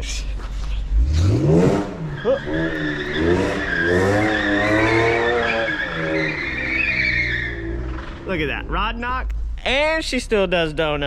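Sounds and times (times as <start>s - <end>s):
car engine revving hard: 0.9s - 8.3s
tyres squealing: 1.8s - 8.3s.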